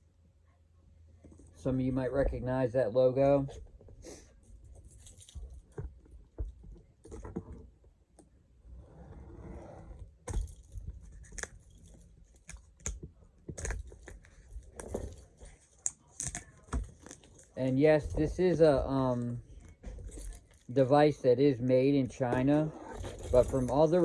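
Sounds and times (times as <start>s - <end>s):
scraping or sliding: 8.7s - 10.0s.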